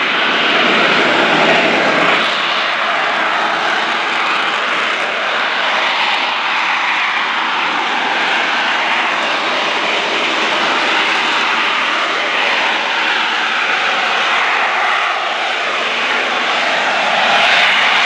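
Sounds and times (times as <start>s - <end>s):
jet engine roaring: 0.0s - 18.0s.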